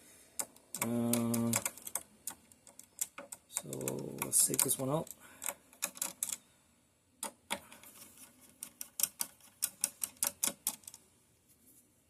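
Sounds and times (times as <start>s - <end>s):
screwdriver clicking on screws: 0.3s - 6.4s, 8.5s - 11.0s.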